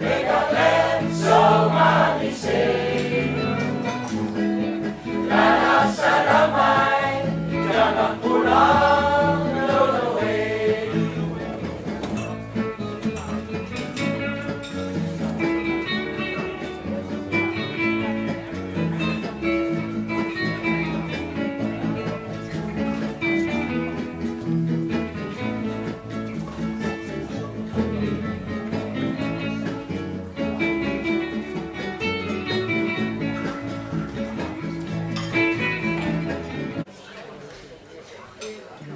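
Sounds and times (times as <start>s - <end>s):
plucked guitar music: 0.0s - 36.9s.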